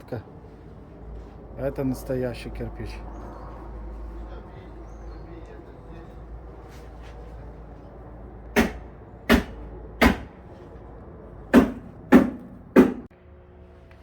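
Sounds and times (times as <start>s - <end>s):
sharp knocks on hard object: 8.6s - 10.3s, 11.6s - 13.1s.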